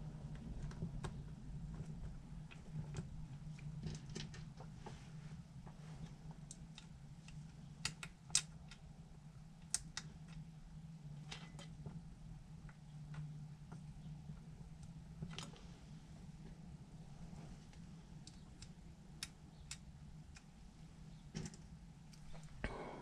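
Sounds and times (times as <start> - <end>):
steady low hum: 0.0 - 23.0
small parts clicking and tapping: 2.5 - 4.7, 6.4 - 8.9, 9.6 - 10.5, 17.7 - 20.5.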